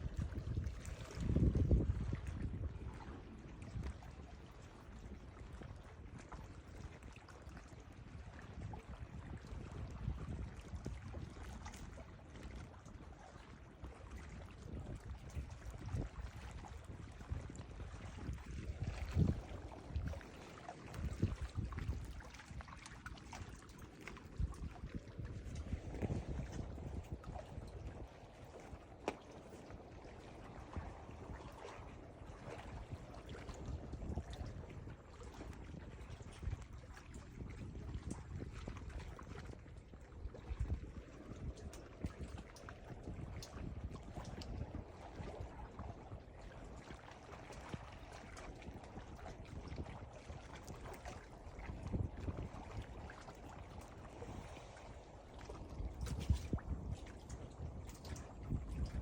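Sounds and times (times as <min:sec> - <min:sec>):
wind rumble on microphone: 0:00.0 - 0:59.0
ocean water splashing: 0:10.5 - 0:59.0.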